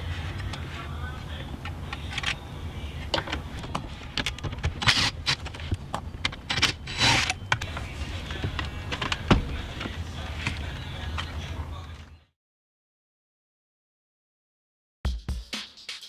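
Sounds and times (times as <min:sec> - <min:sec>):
low steady hum: 0:00.0 - 0:12.3.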